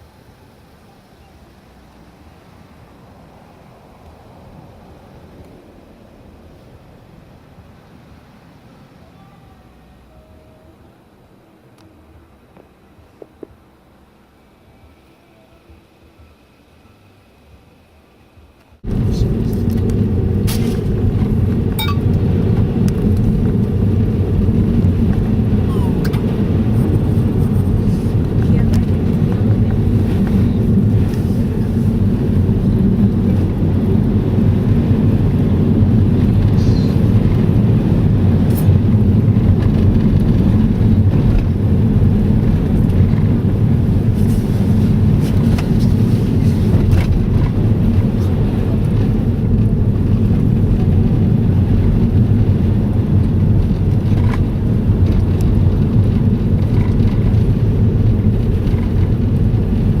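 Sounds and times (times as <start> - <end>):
moving vehicle rumble: 0.0 - 60.0.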